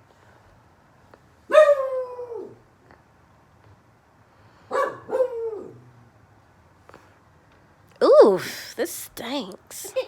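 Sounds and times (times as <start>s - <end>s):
dog barking: 1.5s - 1.9s, 4.7s - 5.4s.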